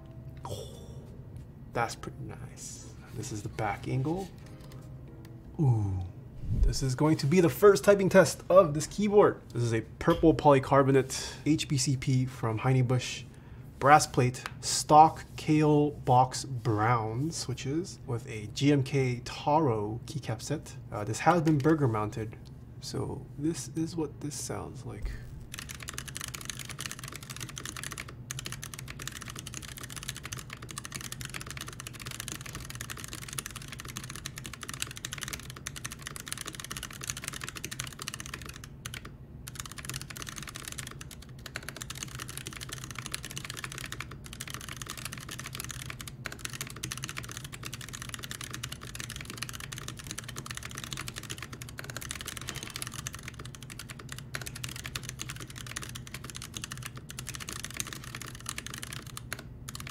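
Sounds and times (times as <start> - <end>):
fast mechanical keyboard typing: 21.2 - 21.9, 25.5 - 59.9.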